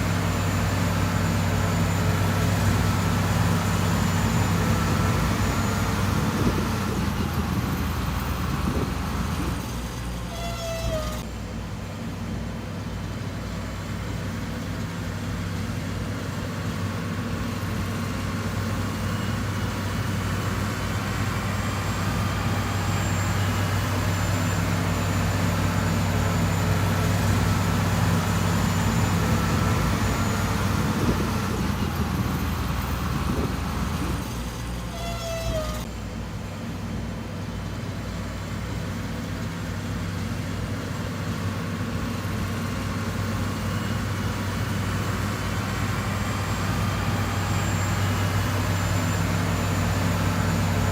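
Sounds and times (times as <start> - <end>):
diesel engine running: 0.0 - 50.9
short high squeal: 9.4 - 11.4, 32.8 - 35.9.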